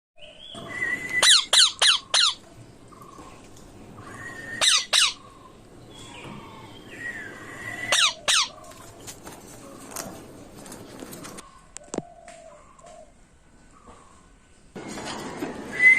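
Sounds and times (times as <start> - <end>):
parrot squawking: 1.2 - 2.4, 4.3 - 5.4, 7.8 - 8.8.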